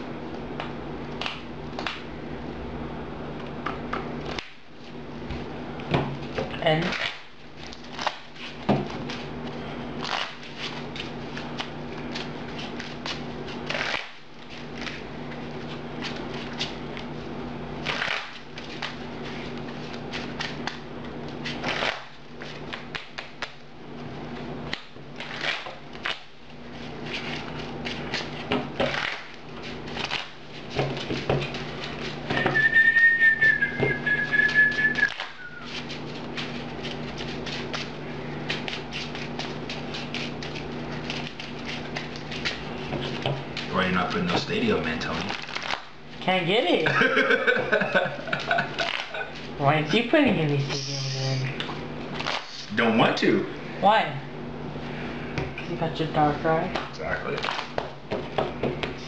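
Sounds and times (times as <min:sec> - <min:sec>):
low electrical hum: 0:00.0 - 0:59.0
person whistling held note: 0:32.4 - 0:35.7.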